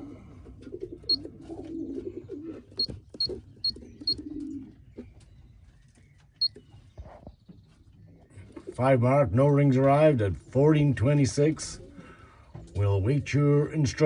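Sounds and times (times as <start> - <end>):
pigeons cooing: 0.0 - 5.1, 11.7 - 12.4.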